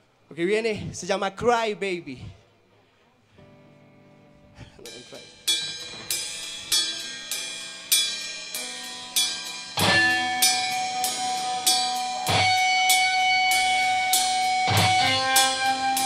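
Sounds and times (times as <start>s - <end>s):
cymbal and drum hits: 4.9s - 16.0s
live rock band: 6.2s - 16.0s
held electric guitar notes: 9.7s - 16.0s.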